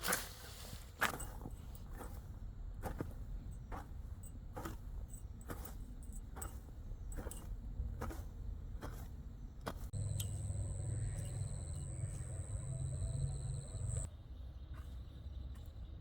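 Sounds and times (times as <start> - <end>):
low motor hum: 6.9 - 14.1
high whine: 10.0 - 14.1.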